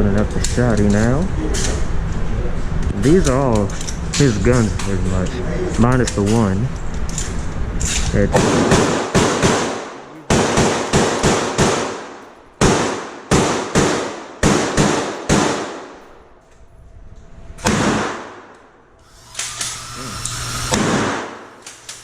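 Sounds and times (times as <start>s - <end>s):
echoing gunshots: 8.4s - 16.3s, 17.6s - 18.8s, 20.6s - 21.6s.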